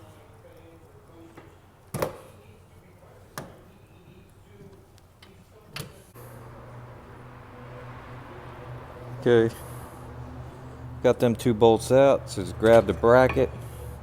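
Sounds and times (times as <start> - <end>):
steady low hum: 6.2 - 12.6.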